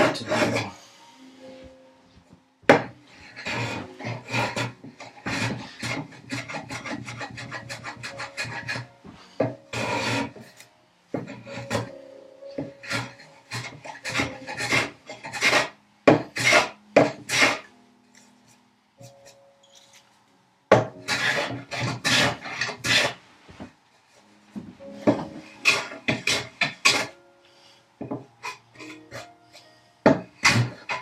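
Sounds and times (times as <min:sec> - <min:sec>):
hand plane scraping wood: 0:00.0 - 0:00.7, 0:02.7 - 0:11.9, 0:12.6 - 0:17.7, 0:20.7 - 0:23.2, 0:25.0 - 0:27.2, 0:30.1 - 0:31.0.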